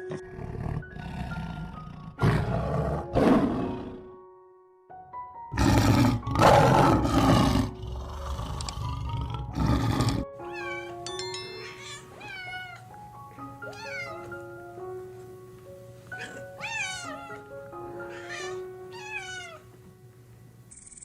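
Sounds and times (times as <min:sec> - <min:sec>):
background music: 0:00.0 - 0:20.7
animal roaring: 0:00.2 - 0:04.1, 0:05.5 - 0:10.2
cat meowing: 0:10.4 - 0:11.0, 0:11.6 - 0:12.9, 0:13.6 - 0:14.3, 0:16.2 - 0:19.7.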